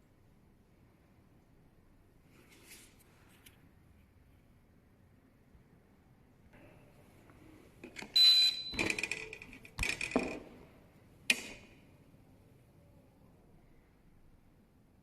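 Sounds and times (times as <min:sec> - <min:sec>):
short high beep: 0:08.2 - 0:08.8
metallic clanks and rattles: 0:08.8 - 0:10.5.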